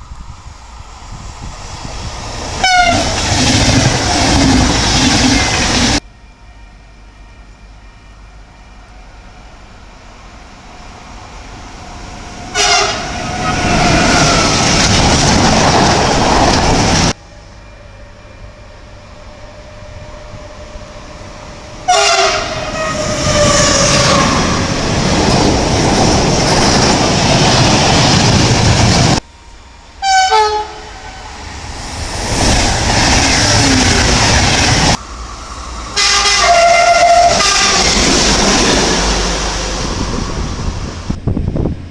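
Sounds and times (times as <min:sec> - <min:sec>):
train rushing past: 0:00.0 - 0:41.9
train horn: 0:02.6 - 0:03.2, 0:12.4 - 0:14.6, 0:19.1 - 0:24.7, 0:30.0 - 0:31.4, 0:35.9 - 0:38.0.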